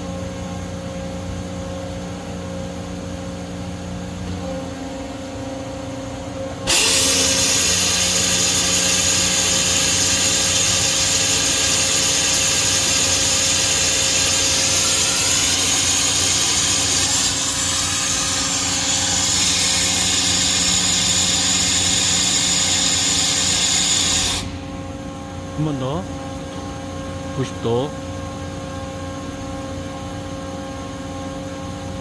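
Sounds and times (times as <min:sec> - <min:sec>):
milling machine humming: 0:03.1 - 0:31.0.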